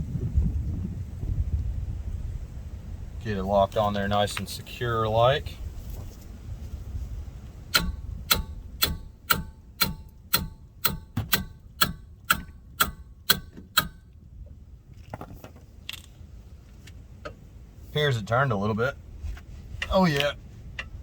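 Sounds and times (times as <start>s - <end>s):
hammer striking metal wrench: 7.7s - 14.1s.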